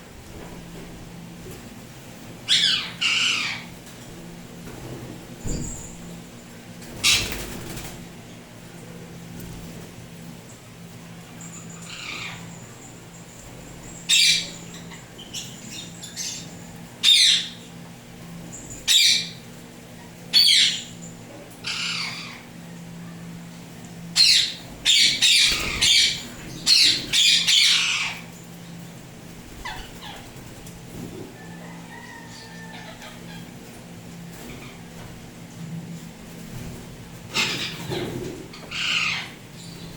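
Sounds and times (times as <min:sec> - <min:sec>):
parrot squawking: 0:02.5 - 0:03.7, 0:14.1 - 0:15.0, 0:17.0 - 0:17.6, 0:20.4 - 0:20.9, 0:21.6 - 0:22.5, 0:24.2 - 0:28.3, 0:37.3 - 0:39.8.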